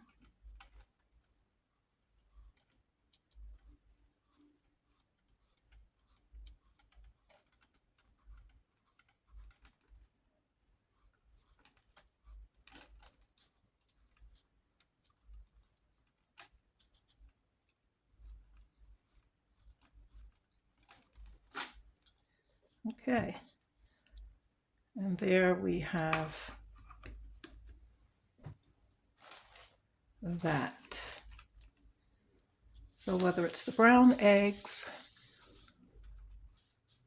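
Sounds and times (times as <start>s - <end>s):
small clicks of art materials: 0.0s - 22.8s.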